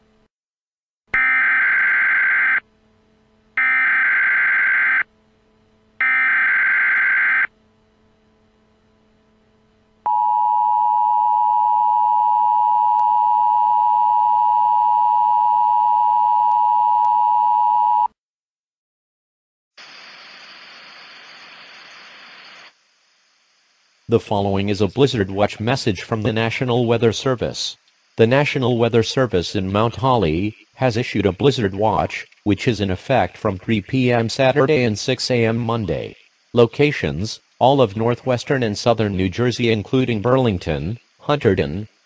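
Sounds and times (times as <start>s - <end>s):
steady attention tone: 1.2s - 18.0s
quiet hiss: 19.8s - 42.0s.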